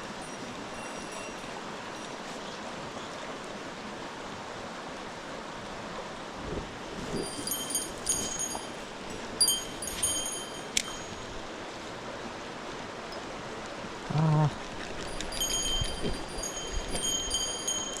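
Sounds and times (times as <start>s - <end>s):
mountain stream flowing: 0.0s - 18.0s
small bell jingling: 0.2s - 2.2s, 7.0s - 11.4s, 15.0s - 18.0s.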